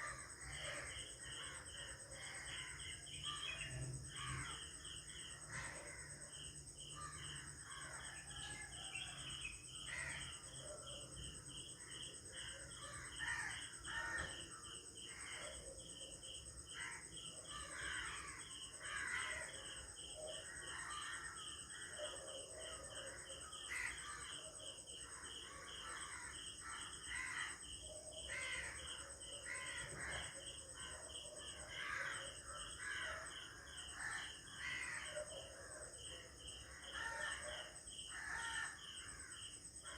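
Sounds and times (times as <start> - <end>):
birds calling and cawing: 0.0 - 6.2, 16.7 - 35.8
high insect drone: 0.0 - 39.9.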